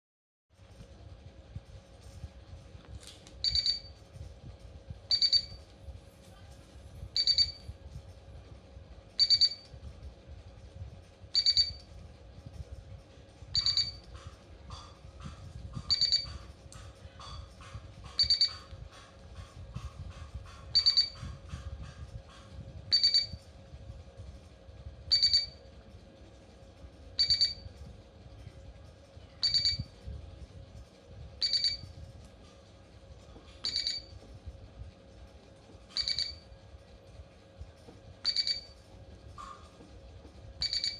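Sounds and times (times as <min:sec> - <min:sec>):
faint steady hum: 0:00.6 - 0:40.9.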